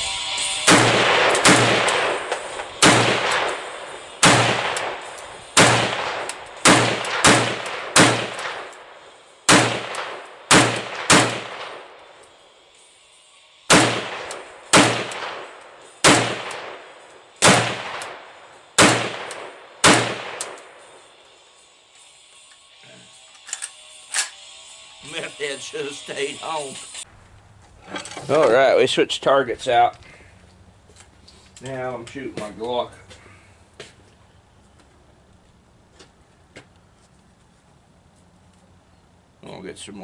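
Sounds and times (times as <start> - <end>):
rifle shots with echo: 0.7 - 12.2, 13.7 - 21.0.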